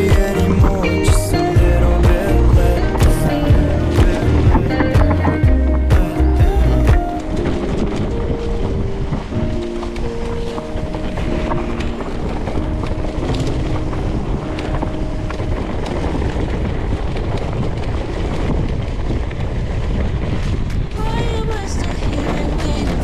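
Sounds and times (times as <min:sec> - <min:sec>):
pop song playing: 0:00.0 - 0:07.4, 0:21.0 - 0:23.0
wind buffeting microphone: 0:00.0 - 0:23.0.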